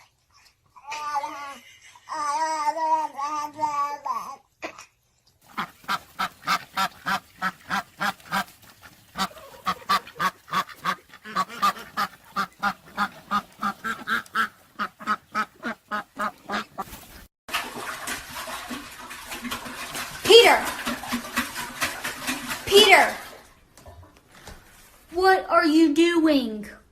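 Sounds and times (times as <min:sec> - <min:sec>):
animal calling: 0:05.5 - 0:16.8.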